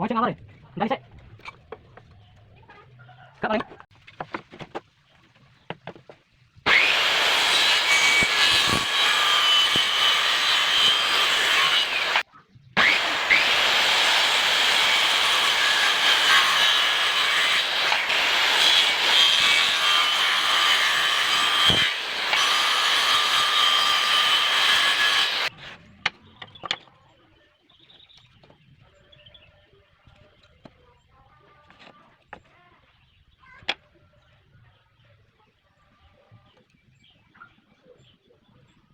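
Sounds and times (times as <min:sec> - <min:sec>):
electric saw cutting wood: 0:06.7 - 0:12.2, 0:12.8 - 0:25.6.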